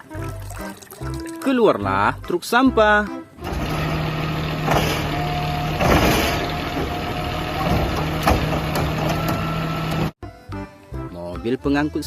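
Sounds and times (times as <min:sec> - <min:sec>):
truck engine idling: 0:03.4 - 0:10.2.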